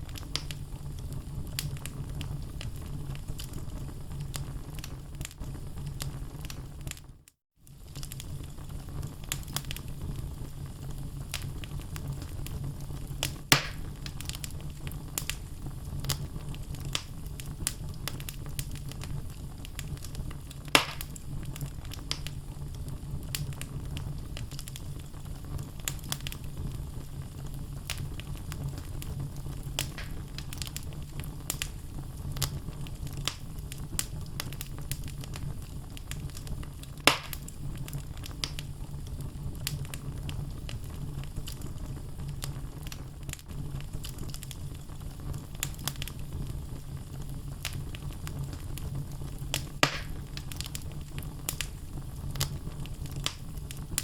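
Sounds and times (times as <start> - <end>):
sharp fire pops: 0.0 - 7.0, 7.7 - 54.0
fire flames rumbling: 0.0 - 54.0
logs crackling: 13.2 - 22.4, 27.8 - 31.8, 32.4 - 38.7, 49.3 - 54.0.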